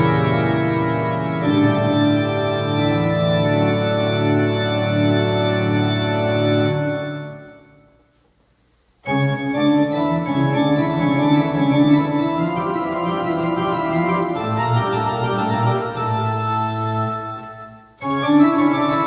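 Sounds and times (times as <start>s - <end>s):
keyboard organ chords: 0.0s - 8.0s, 9.0s - 19.0s.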